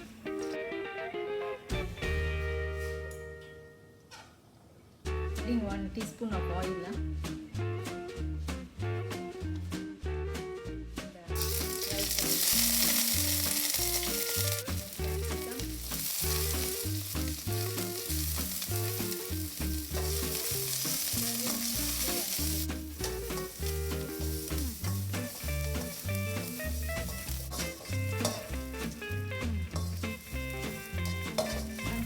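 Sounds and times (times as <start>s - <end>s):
background music with bass line: 1.7s - 3.2s, 5.1s - 32.0s
food sizzling in frying pan: 11.4s - 32.0s.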